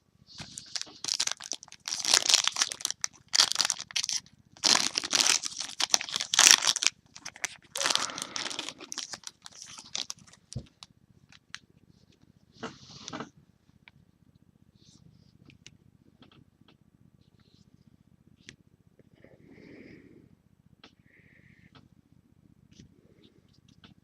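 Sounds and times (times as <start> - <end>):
wrapper tearing and crinkling: 0.4 - 11.6.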